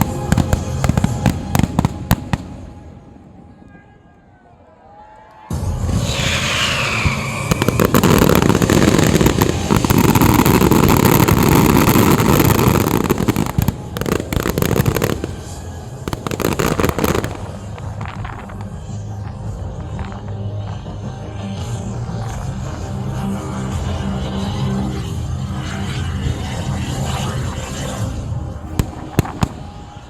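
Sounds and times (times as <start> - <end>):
fireworks crackling bangs: 0.0 - 3.2, 5.5 - 30.0
firework falling whistle: 5.5 - 18.0, 26.0 - 30.0.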